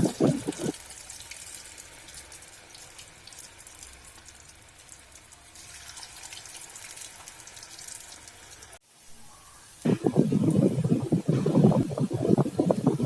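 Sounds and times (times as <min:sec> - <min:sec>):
potatoes sizzling in hot oil: 0:00.0 - 0:09.0.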